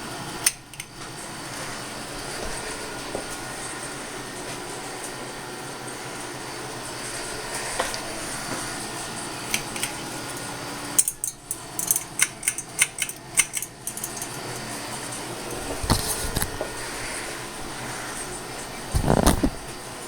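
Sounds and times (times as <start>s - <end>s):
ceiling fan buzzing hum: 0.0s - 20.0s
sharp metallic clicks: 11.0s - 14.4s.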